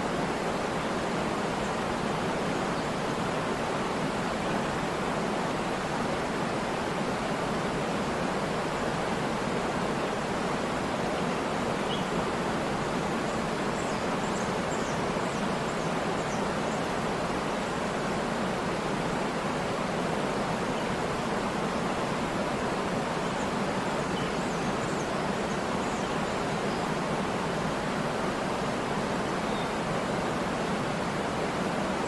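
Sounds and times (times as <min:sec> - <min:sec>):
waterfall roaring: 0:00.0 - 0:32.0.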